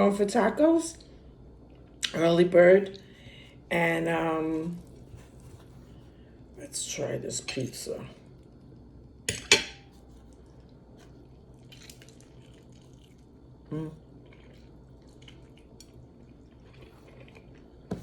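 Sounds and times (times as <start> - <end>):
chewing with wet mouth clicks: 10.3 - 13.5, 14.1 - 17.9
person humming: 13.7 - 14.0.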